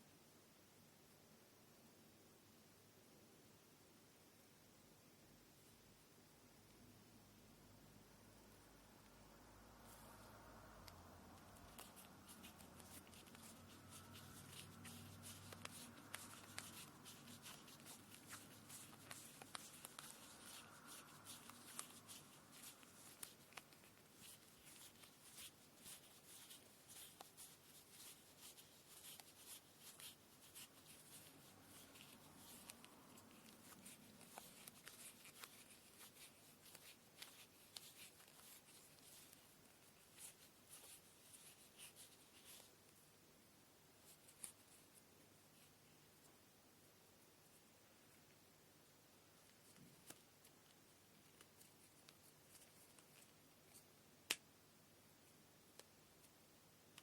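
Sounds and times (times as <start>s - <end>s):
rustling and crackling of thread: 9.0s - 43.2s, 43.9s - 48.5s, 49.2s - 54.5s.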